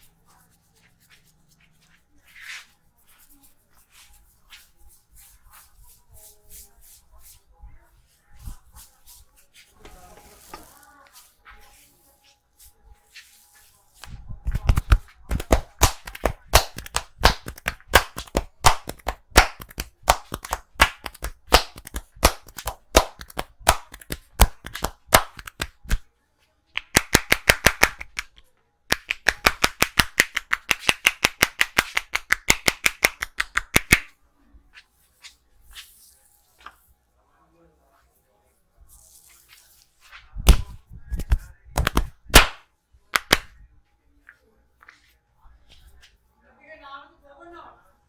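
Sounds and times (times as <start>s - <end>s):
hands slapping and clapping skin: 14.0s - 26.0s, 26.8s - 34.1s, 40.5s - 43.5s.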